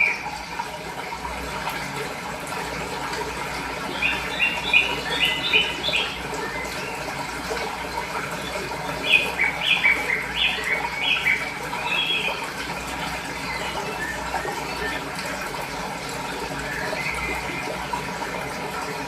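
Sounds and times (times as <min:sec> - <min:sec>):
running water: 0:00.0 - 0:19.0
songbird chirping: 0:03.9 - 0:07.1, 0:08.3 - 0:12.4.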